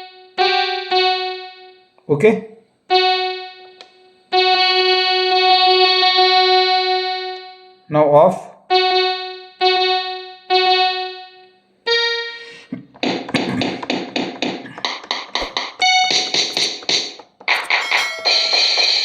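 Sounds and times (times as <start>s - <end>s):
electronic keyboard piano tone: 0.0s - 1.7s, 11.9s - 16.9s, 17.5s - 19.0s.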